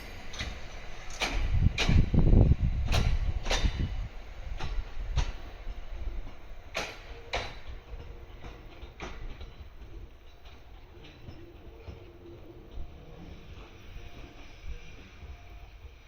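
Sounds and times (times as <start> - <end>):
low train rumble: 0.0 - 16.0
train wheels clacking: 0.0 - 16.0.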